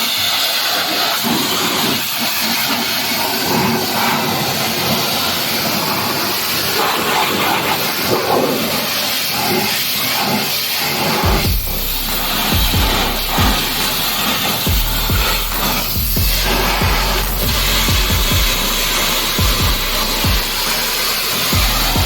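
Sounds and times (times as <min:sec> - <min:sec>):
pressure washer spraying water: 0:00.0 - 0:22.0.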